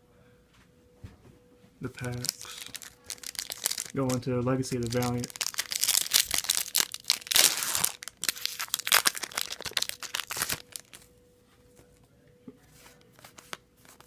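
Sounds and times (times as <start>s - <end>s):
foil wrapper tearing and crinkling: 2.0s - 11.0s.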